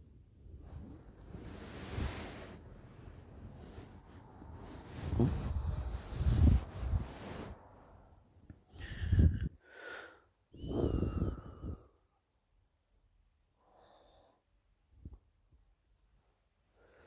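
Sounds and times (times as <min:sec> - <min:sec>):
person snoring: 0:05.0 - 0:07.0, 0:10.5 - 0:11.9.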